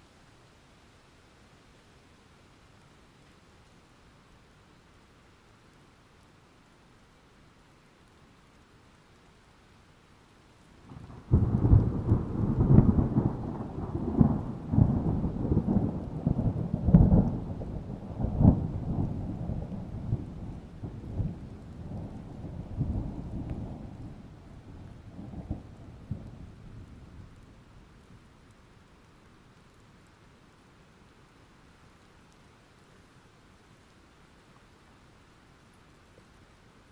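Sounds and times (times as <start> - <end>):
thunder cracking and rumbling: 10.9 - 28.0.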